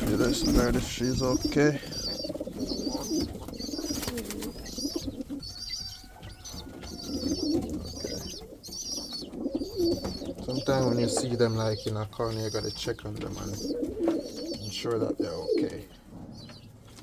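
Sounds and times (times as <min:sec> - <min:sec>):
pigeons cooing: 0:00.0 - 0:17.0.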